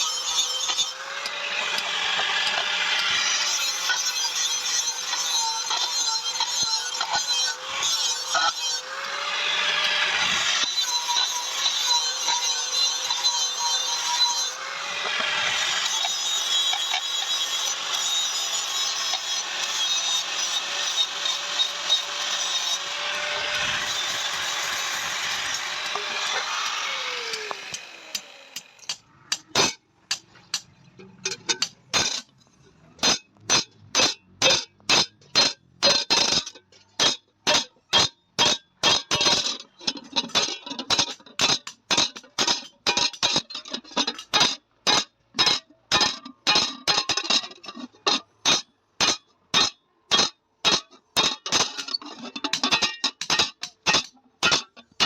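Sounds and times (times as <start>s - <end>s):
power tool winding down: 21.1s - 28.8s.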